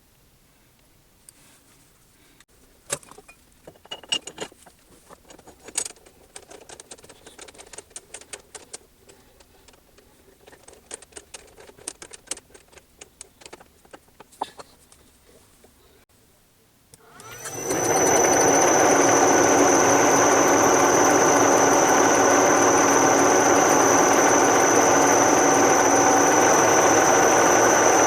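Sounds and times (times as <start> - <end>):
small metal tools clinking: 3.0 - 12.8.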